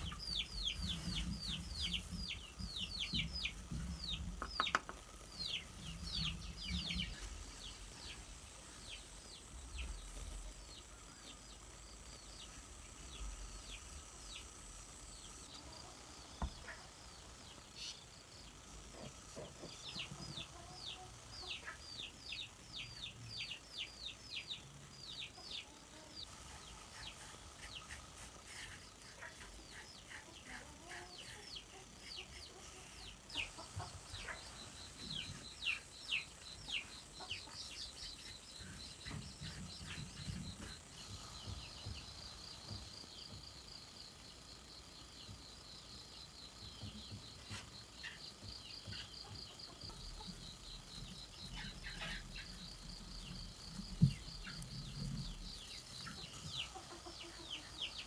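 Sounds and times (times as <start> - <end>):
chicks peeping: 0.0 - 58.0.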